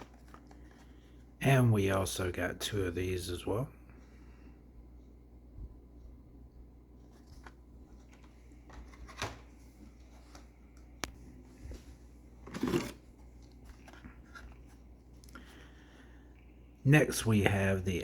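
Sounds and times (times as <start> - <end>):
rustling card and plastic packaging: 0.0 - 1.4, 7.0 - 15.7.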